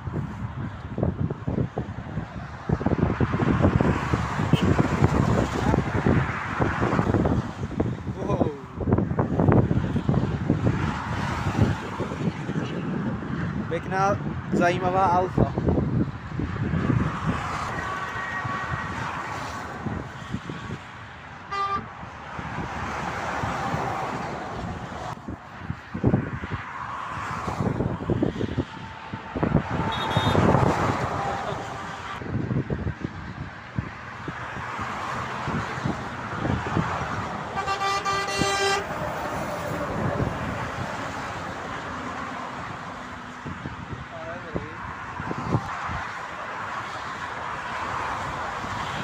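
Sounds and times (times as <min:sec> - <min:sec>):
motorway traffic passing: 0:00.0 - 0:49.0
car horn toot: 0:04.5 - 0:04.8, 0:21.5 - 0:21.9, 0:29.8 - 0:30.7, 0:37.6 - 0:38.9.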